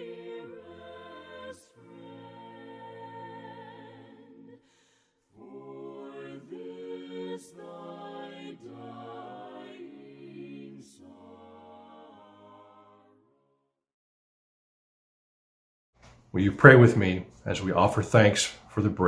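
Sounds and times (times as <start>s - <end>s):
voices singing a hymn in harmony: 0.0s - 13.4s.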